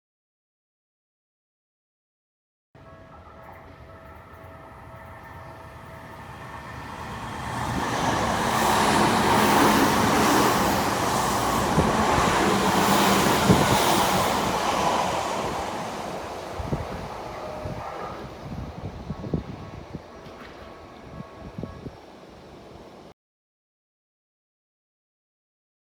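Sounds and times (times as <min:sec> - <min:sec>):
train wheels rushing on rail: 0:02.8 - 0:23.1.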